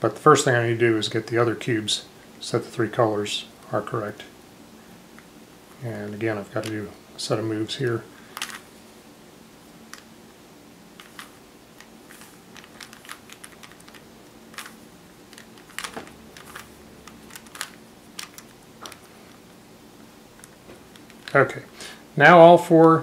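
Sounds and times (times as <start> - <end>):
plastic puzzle cube clicks: 11.0 - 19.1.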